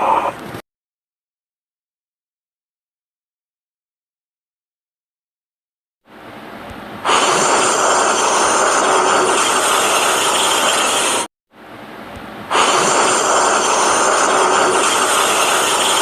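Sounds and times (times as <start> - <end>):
steam locomotive hissing: 7.0 - 11.3, 12.5 - 16.0.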